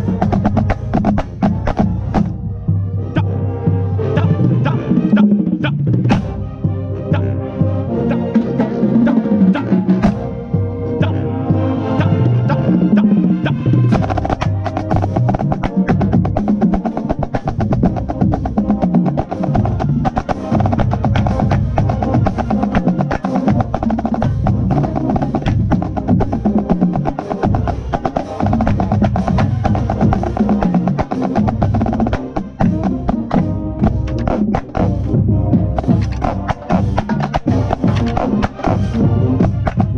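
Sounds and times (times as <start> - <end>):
snare drums playing rapid patterns: 0.0 - 2.4, 9.0 - 10.4, 12.0 - 39.9
marching band brass: 0.0 - 39.9.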